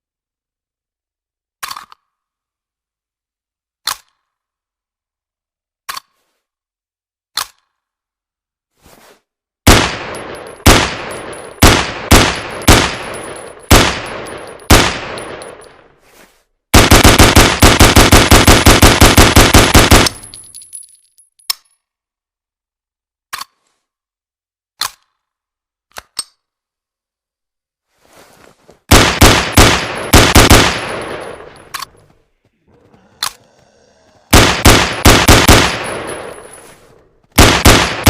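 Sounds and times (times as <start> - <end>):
rapid burst of gunshots: 9.7 - 15.4, 16.7 - 20.3, 28.9 - 31.6, 34.3 - 36.5, 37.4 - 38.0
rifle shots with ringing tail: 9.7 - 15.8, 16.8 - 20.4, 28.9 - 32.0, 34.4 - 36.7, 37.4 - 38.0.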